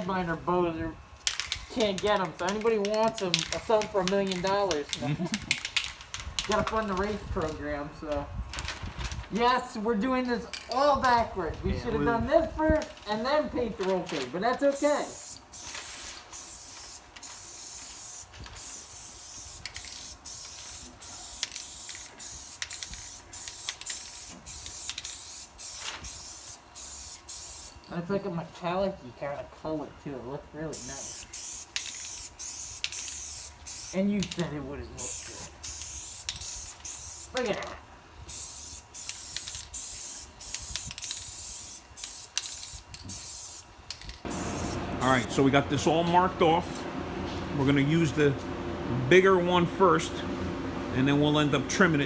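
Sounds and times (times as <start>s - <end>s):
spray paint hissing: 14.7s - 27.8s, 30.7s - 34.4s, 35.0s - 45.3s.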